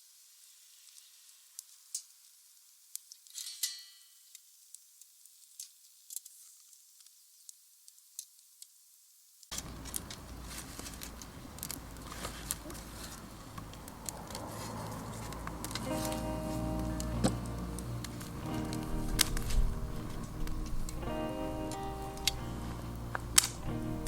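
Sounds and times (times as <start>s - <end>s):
wood fire crackling: 9.4s - 24.0s
steady low rumble: 12.8s - 24.0s.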